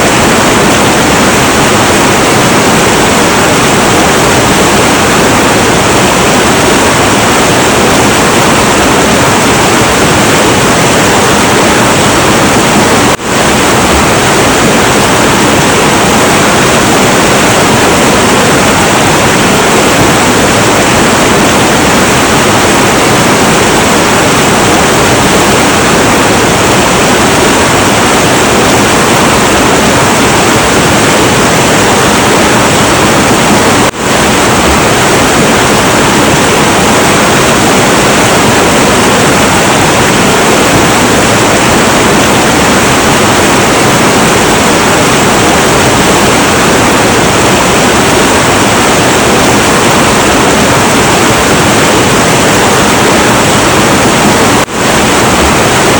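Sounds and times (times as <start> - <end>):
river water rushing: 0.0 - 55.9.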